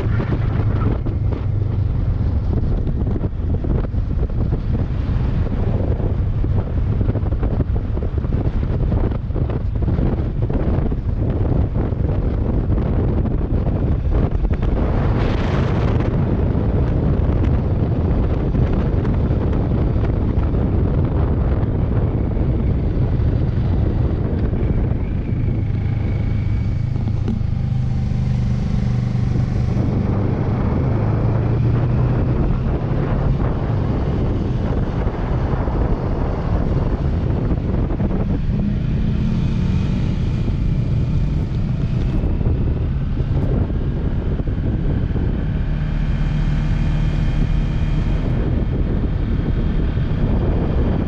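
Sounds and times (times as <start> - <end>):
motorcycle engine droning: 0.0 - 51.0
wind buffeting microphone: 0.0 - 51.0.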